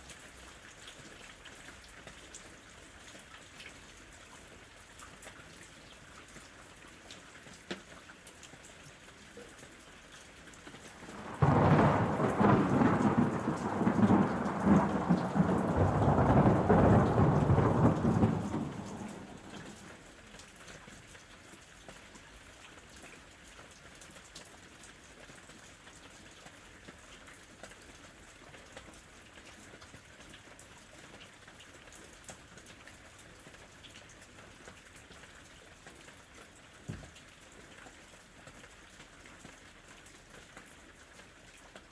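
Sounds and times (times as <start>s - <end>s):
steady rain: 0.0s - 41.9s
thunderclap rumbling: 11.0s - 20.0s.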